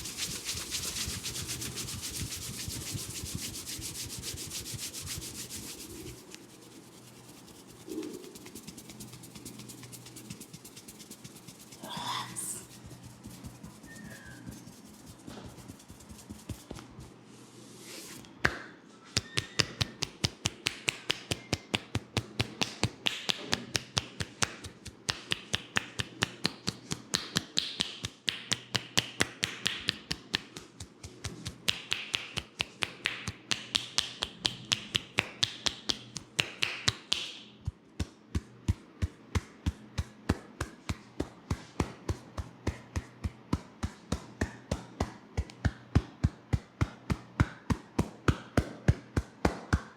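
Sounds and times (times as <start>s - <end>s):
hands tapping on head: 19.2s - 49.9s.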